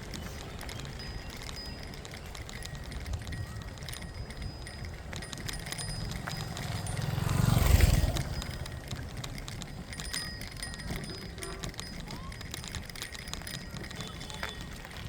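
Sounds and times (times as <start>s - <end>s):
vehicle passing by: 5.4s - 10.3s.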